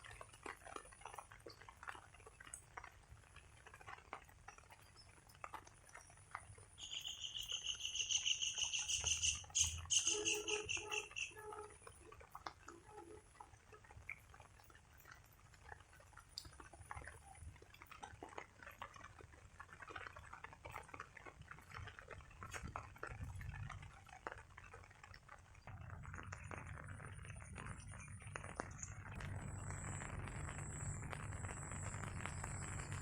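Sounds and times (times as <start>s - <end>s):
rain dripping and pattering: 0.0s - 33.0s
steady rain hiss: 24.9s - 33.0s.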